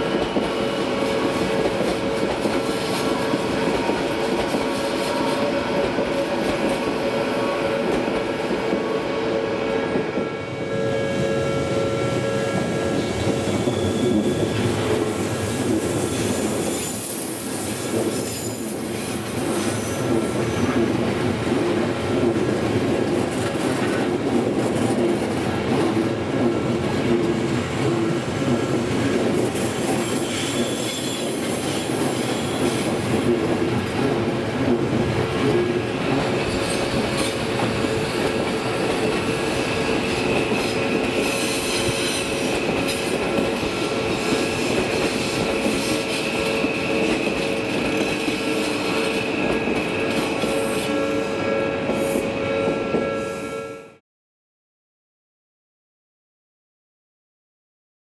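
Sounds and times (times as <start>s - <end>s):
train wheels squealing on rails: 0.0s - 24.1s, 25.6s - 53.8s
steady train rumble: 0.0s - 53.6s
high ringing tone: 10.2s - 15.4s, 47.7s - 54.0s.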